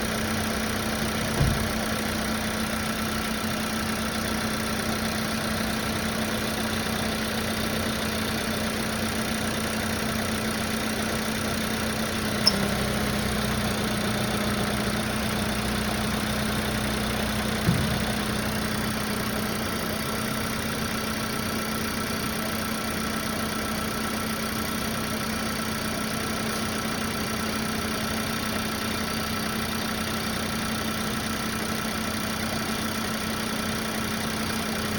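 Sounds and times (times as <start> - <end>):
car engine idling: 0.0 - 34.9
sharp click from engine: 12.2 - 13.6.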